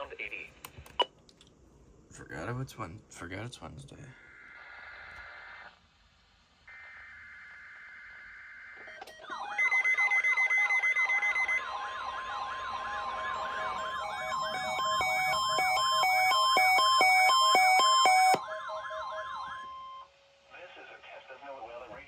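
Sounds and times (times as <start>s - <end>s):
warbling electronic siren: 6.7s - 20.1s
stepped alarm tones: 8.7s - 20.2s
steady warning alarm tone: 8.8s - 20.2s
fast loud beeping: 9.6s - 20.0s.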